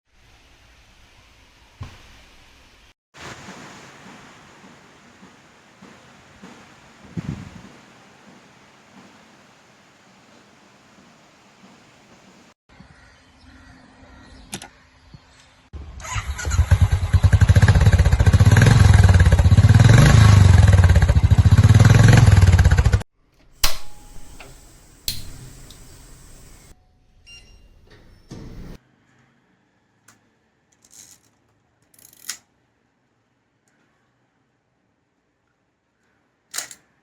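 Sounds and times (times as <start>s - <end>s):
engine revving: 16.0s - 23.0s
sharp clicks: 23.6s - 26.7s.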